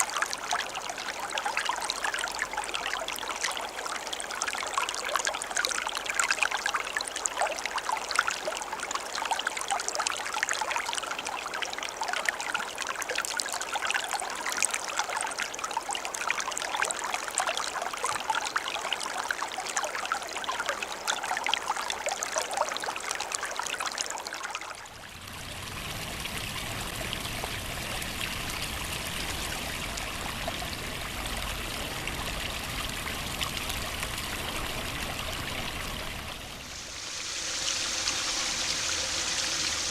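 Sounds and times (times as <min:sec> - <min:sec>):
running water splashing: 0:00.0 - 0:07.6, 0:25.0 - 0:39.9.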